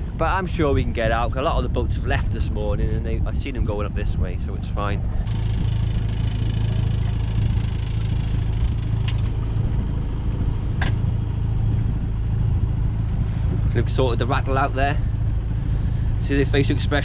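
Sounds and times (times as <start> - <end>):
boat engine running: 0.0 - 17.0
light rattle: 5.2 - 11.2.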